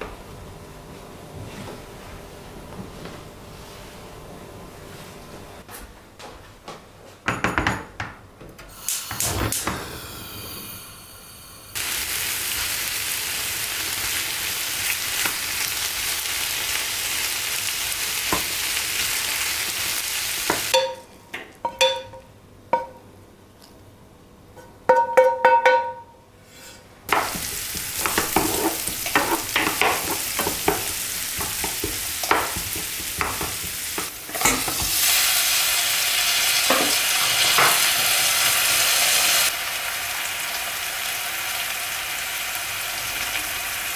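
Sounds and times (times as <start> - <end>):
food sizzling in a pan: 8.7 - 22.1, 27.1 - 43.9.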